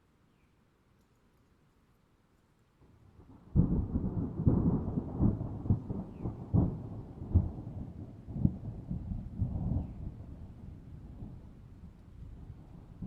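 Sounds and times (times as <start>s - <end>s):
thunder rumbling and cracking: 3.2s - 11.6s.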